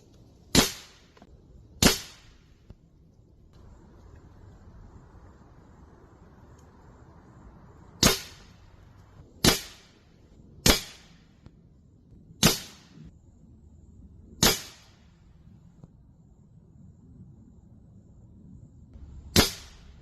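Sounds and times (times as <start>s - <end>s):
air rifle shots: 0.5s - 1.2s, 1.8s - 2.4s, 8.0s - 8.6s, 9.4s - 10.0s, 10.6s - 11.3s, 12.4s - 13.1s, 14.4s - 15.0s, 19.2s - 20.0s.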